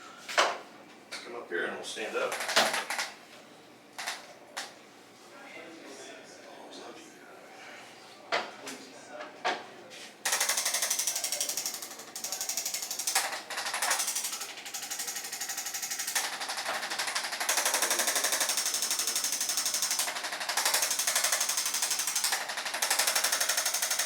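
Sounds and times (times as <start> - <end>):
electric percussion rattle: 2.3 - 3.1, 10.3 - 24.0.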